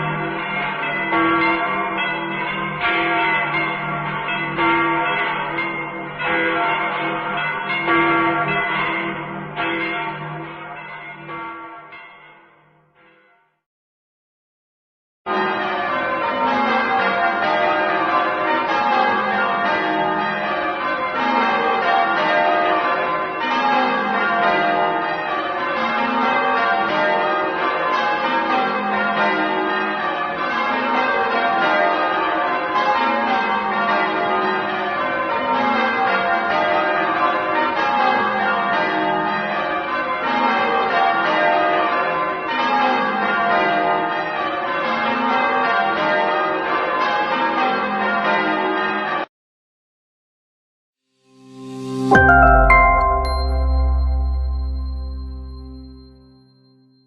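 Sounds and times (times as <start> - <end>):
bells ringing in descending runs: 51.5 - 56.9.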